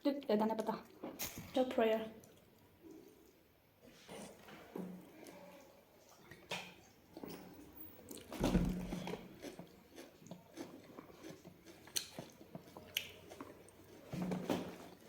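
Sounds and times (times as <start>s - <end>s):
biting and chewing: 8.1s - 15.0s.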